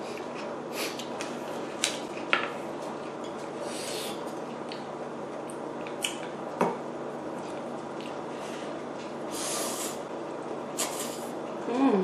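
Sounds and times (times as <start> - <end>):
low background hum: 0.0 - 12.0
chewing: 7.3 - 8.3.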